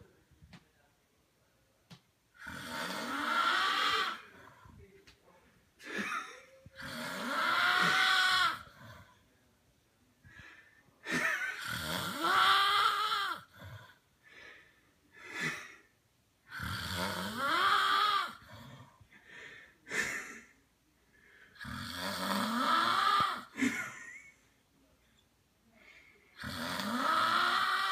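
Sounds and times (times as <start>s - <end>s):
man snoring loudly: 2.4s - 4.3s, 6.8s - 8.9s, 11.5s - 13.6s, 16.5s - 18.5s, 21.6s - 23.5s, 26.4s - 27.9s
breathy sounds: 17.3s - 24.1s.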